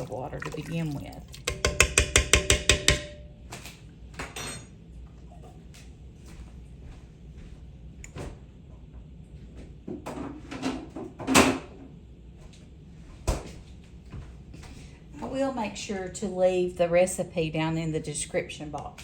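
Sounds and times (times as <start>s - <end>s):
kitchen knocks and clunks: 1.5s - 3.2s.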